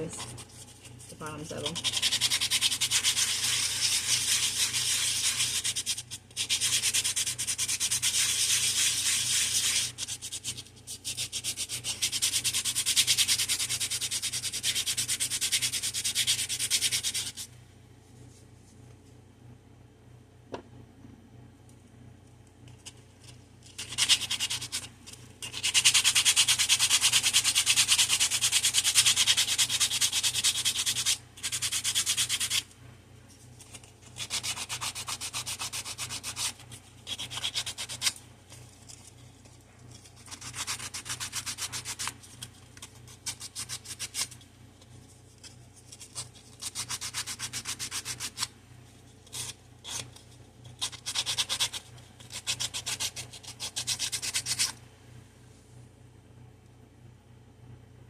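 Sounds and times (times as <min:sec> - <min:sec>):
sandpaper rubbing on wood: 0:01.7 - 0:10.5.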